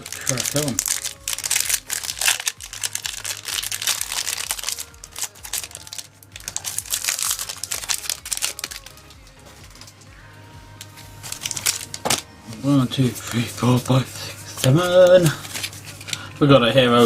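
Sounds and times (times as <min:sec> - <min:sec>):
foil wrapper crinkling and tearing: 0:00.0 - 0:10.0, 0:11.2 - 0:12.2, 0:13.7 - 0:16.3.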